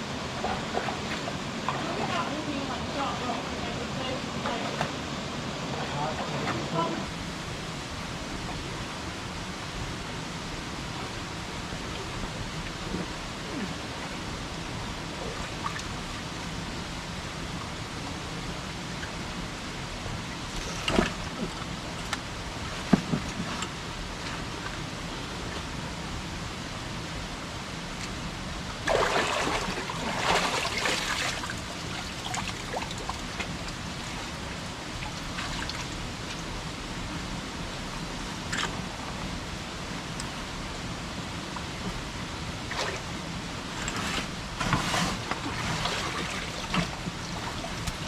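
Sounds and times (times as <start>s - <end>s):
people wading through water: 0.4s - 5.1s, 28.8s - 36.7s
creek running and trickling: 27.6s - 48.0s.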